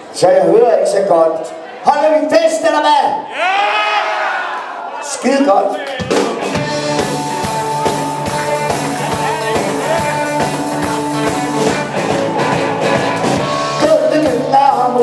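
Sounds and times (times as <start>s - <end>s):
steady drum beat: 5.9s - 15.0s
guitar chords: 6.1s - 15.0s.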